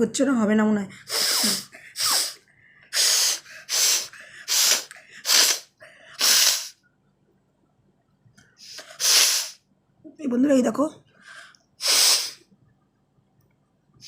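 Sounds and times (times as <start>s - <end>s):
woman blowing her nose: 1.0s - 6.8s, 8.6s - 9.6s, 11.8s - 12.4s.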